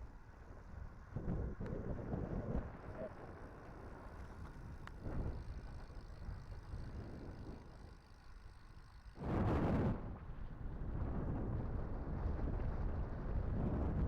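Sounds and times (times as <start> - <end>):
wind rushing over microphone: 9.2 - 14.0.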